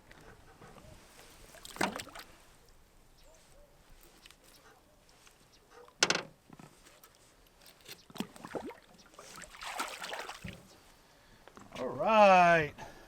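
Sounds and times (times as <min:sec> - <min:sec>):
small splashes and knocks: 0:01.4 - 0:02.4, 0:06.6 - 0:10.8
fish splashing into water: 0:08.2 - 0:10.7.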